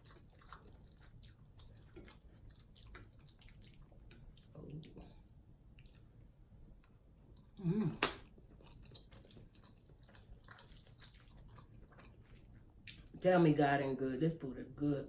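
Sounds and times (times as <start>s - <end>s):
chewing and wet mouth sounds: 0.0s - 13.3s.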